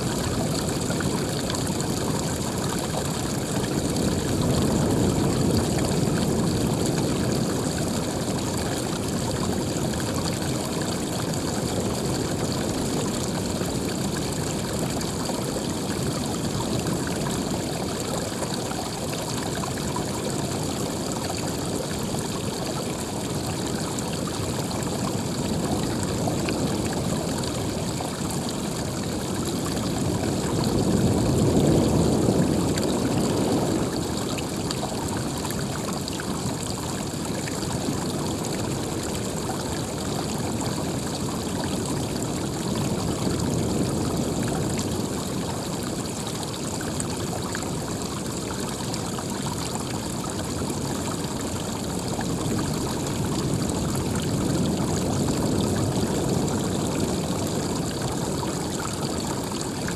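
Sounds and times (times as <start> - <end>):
running water rushing: 0.0 - 59.9.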